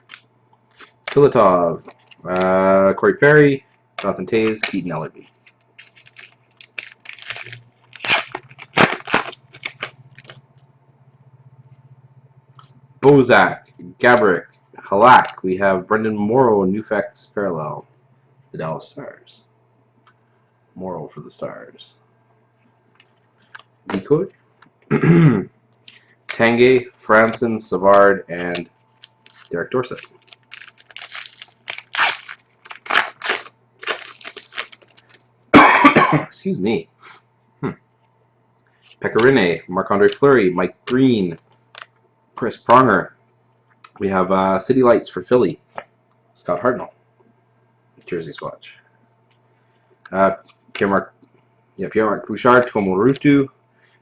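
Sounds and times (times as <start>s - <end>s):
cards shuffling: 4.0s - 10.4s, 27.2s - 35.2s
foil wrapper crinkling: 4.0s - 10.4s, 28.4s - 35.2s
throat clearing: 24.9s - 25.5s, 35.6s - 36.3s, 37.6s - 37.8s.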